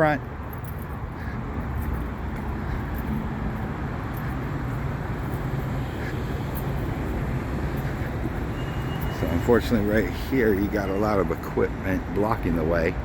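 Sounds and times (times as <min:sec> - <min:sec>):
road traffic noise: 0:00.0 - 0:13.0.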